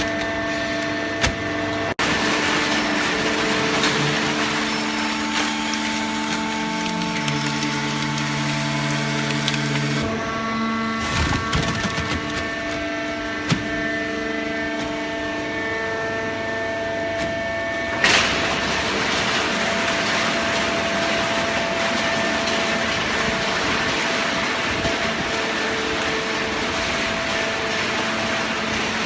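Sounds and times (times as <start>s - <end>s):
loud machine clunk: 17.3s - 29.0s.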